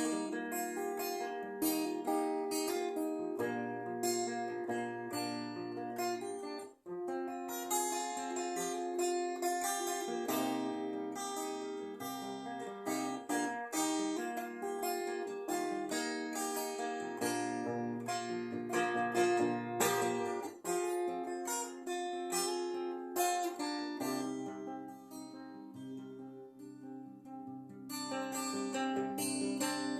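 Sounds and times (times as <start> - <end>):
guitar plucked notes and chords: 0.0 - 29.9.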